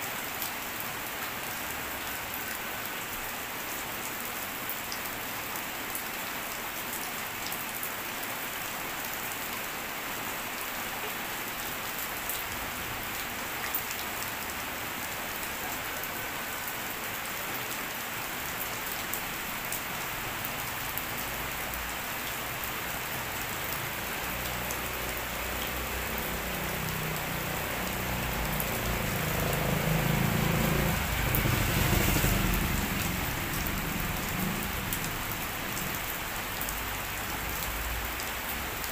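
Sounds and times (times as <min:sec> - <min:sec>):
rain falling: 0:00.0 - 0:38.9.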